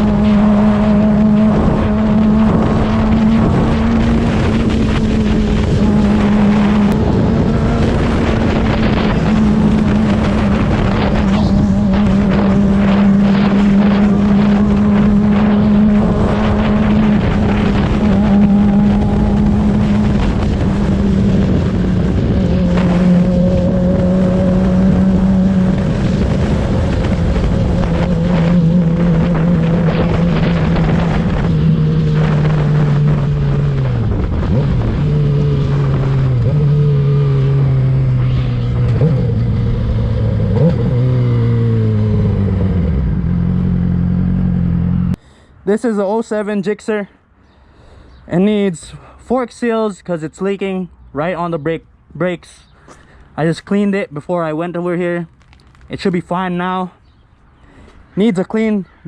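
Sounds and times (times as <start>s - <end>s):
motorcycle engine cruising: 0.0s - 45.2s
wind noise on microphone: 0.0s - 45.2s.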